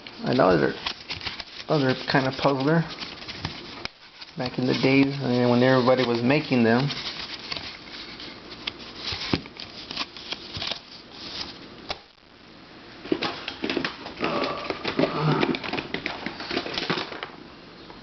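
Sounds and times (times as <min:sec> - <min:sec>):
plastic puzzles clicking and rattling: 0:13.1 - 0:17.3.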